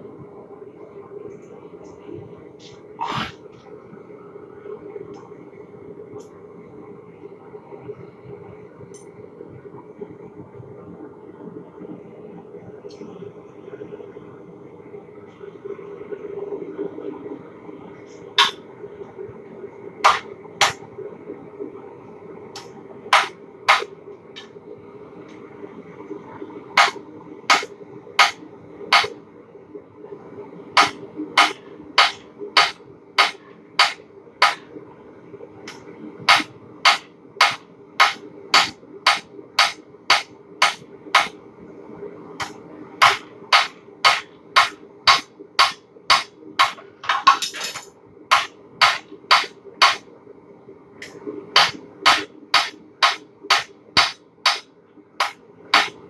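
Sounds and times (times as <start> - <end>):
steady low hum: 0.0 - 56.0
hammer striking hot steel on anvil: 18.4 - 18.6, 20.1 - 20.8, 22.6 - 24.5, 26.8 - 29.2, 30.8 - 34.7, 35.7 - 41.4, 42.4 - 50.0, 51.0 - 54.6, 55.2 - 56.0.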